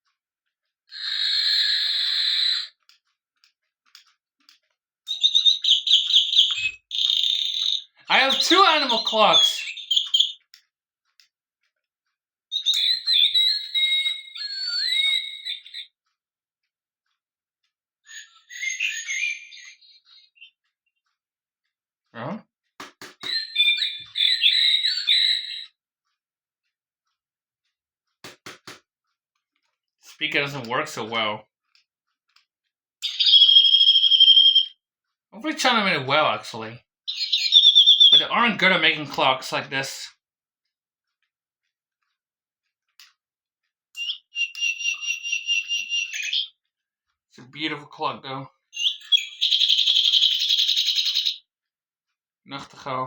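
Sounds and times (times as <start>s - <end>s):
rapid chirping bird song: 5.1s - 10.5s, 12.5s - 15.8s, 18.1s - 20.6s, 23.2s - 25.7s, 33.0s - 34.7s, 37.1s - 39.3s, 44.0s - 46.5s, 48.8s - 51.4s.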